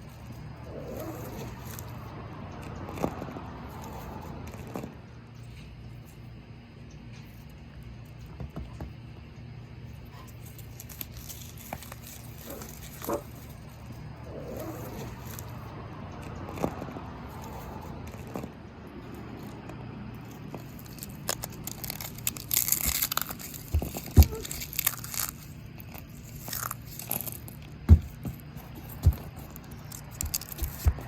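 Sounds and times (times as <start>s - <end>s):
cookies crunching: 9.9s - 31.0s
sharp thumps: 26.5s - 31.0s.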